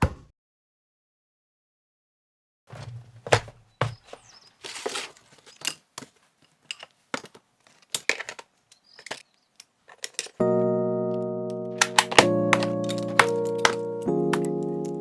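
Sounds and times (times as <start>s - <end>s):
rustling: 2.7s - 10.4s, 11.8s - 15.0s
hard objects clicking and knocking: 2.8s - 10.4s, 11.8s - 15.0s.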